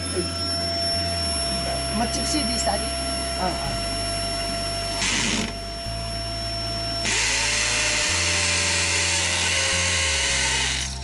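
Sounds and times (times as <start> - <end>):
vacuum cleaner running: 0.0 - 11.0
electric drill boring into brick: 4.7 - 11.0.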